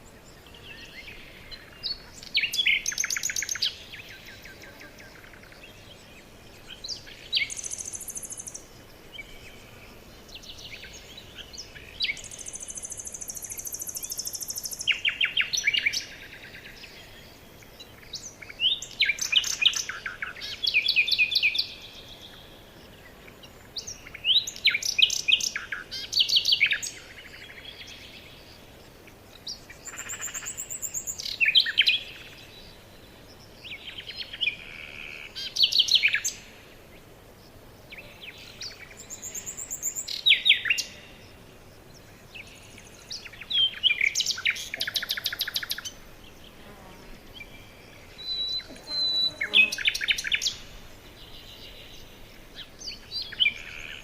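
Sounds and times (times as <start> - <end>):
songbirds chirping and trilling: 0.0 - 54.0.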